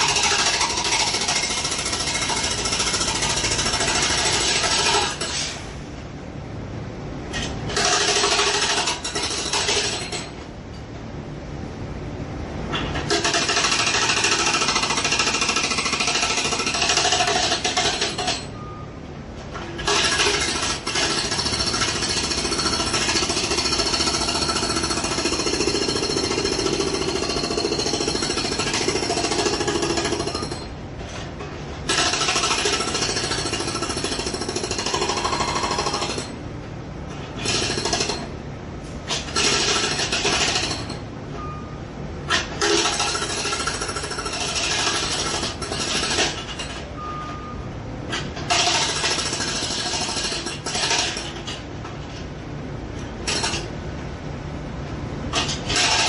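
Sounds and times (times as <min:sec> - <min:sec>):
jackhammer hammering: 0:00.0 - 0:05.3, 0:13.1 - 0:18.5, 0:19.8 - 0:30.6, 0:31.9 - 0:36.4, 0:48.5 - 0:51.3.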